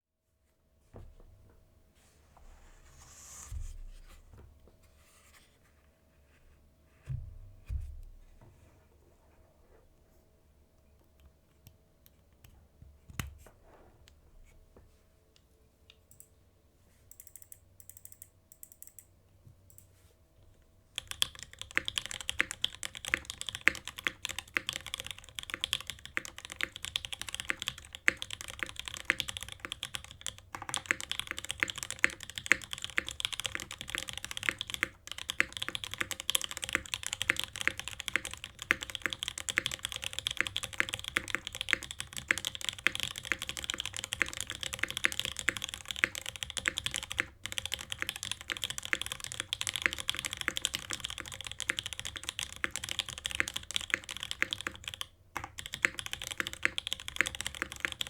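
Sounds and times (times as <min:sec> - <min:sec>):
soft thump: 0:07.1 - 0:08.5
mechanical keyboard typing: 0:17.1 - 0:19.1, 0:21.0 - 0:58.0.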